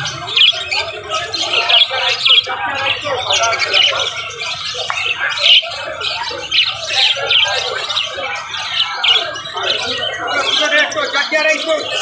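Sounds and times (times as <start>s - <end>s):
birds chirping and squawking: 0.0s - 12.0s.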